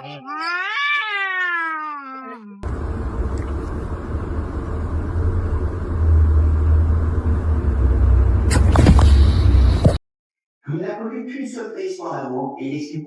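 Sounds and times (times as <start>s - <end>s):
cat meowing: 0.0s - 2.6s
steady low rumble: 2.6s - 10.0s.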